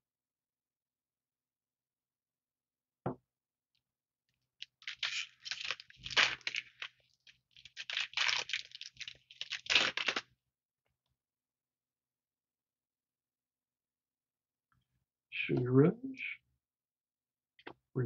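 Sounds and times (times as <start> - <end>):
foil wrapper tearing and crinkling: 4.6 - 10.3.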